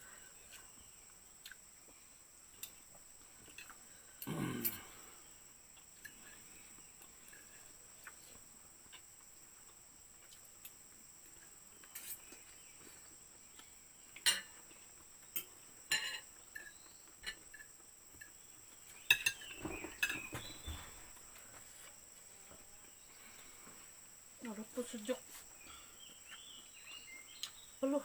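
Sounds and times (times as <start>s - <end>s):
insect chorus: 0.0s - 28.0s
cutlery clinking on plates: 14.2s - 14.6s, 15.3s - 18.3s, 19.0s - 20.5s.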